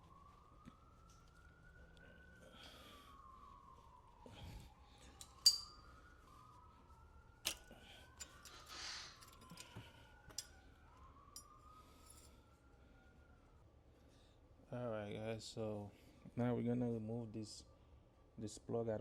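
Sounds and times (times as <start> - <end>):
faint siren wailing: 0.0 - 19.0
hand tools clinking: 5.2 - 5.8, 7.4 - 9.7.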